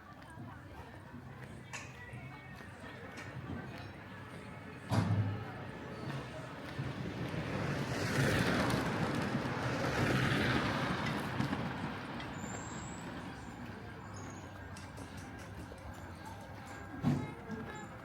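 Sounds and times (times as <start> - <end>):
vehicle passing by: 6.8 - 13.4.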